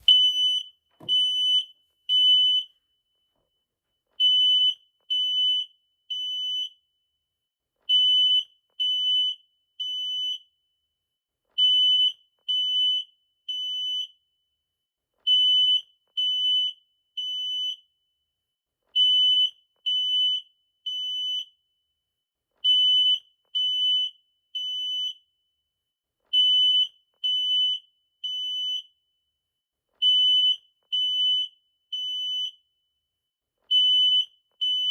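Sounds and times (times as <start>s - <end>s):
smoke detector alarm beeping: 0.0s - 3.3s, 4.2s - 6.9s, 7.9s - 10.6s, 11.6s - 14.2s, 15.3s - 17.9s, 19.0s - 21.6s, 22.7s - 25.3s, 26.4s - 29.0s, 30.0s - 32.6s, 33.7s - 34.9s.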